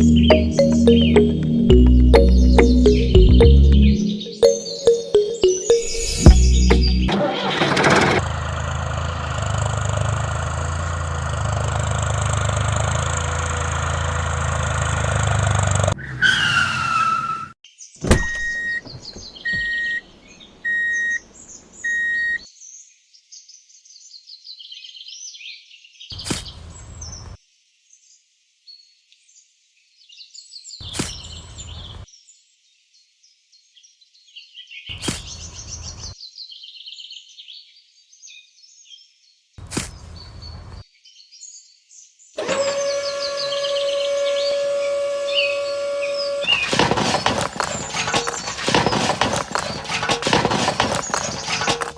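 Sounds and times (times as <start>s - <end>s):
engine running: 0.0s - 4.0s, 6.1s - 16.0s, 42.4s - 51.9s
birds chirping: 0.0s - 7.1s, 18.0s - 22.4s, 42.8s - 51.9s.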